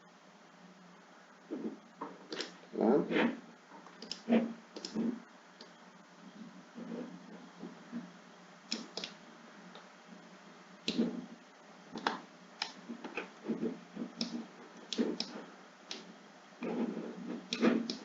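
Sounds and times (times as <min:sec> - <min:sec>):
faint background hiss: 0:00.0 - 0:18.0
computer mouse clicking: 0:02.3 - 0:02.6, 0:03.9 - 0:05.8, 0:08.7 - 0:09.2, 0:10.9 - 0:11.2, 0:12.0 - 0:18.0.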